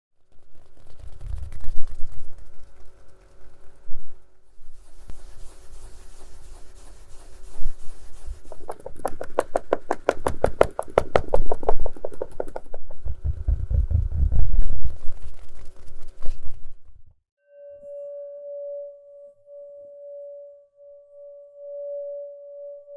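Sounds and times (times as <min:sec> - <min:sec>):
quick run of crisp taps: 0:00.3 - 0:03.6, 0:08.4 - 0:16.8
case being tapped: 0:08.6 - 0:14.2
low rumbling handling noise: 0:11.5 - 0:15.2.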